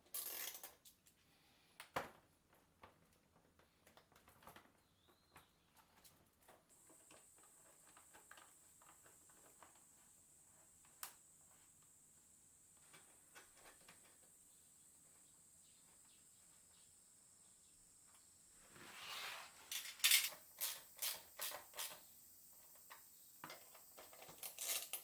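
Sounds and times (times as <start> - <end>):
faint clicks and taps: 1.8 - 10.1.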